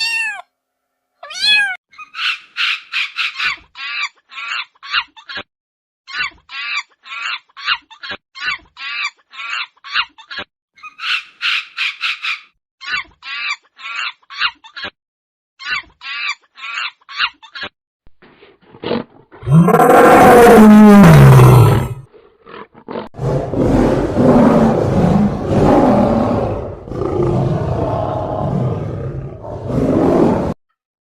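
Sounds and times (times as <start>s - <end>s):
big cat roaring: 18.8s - 30.6s.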